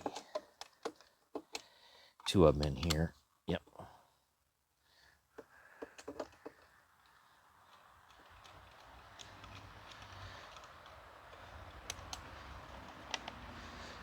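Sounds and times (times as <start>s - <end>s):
screwdriver clicks and taps: 0.0s - 1.6s, 5.4s - 6.6s, 7.7s - 13.5s.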